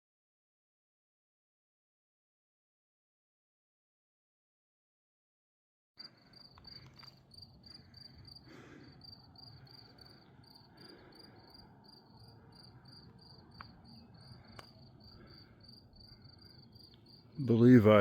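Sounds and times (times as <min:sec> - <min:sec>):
insects chirping: 0:06.0 - 0:18.0
light clicks: 0:06.5 - 0:07.2, 0:13.0 - 0:14.8.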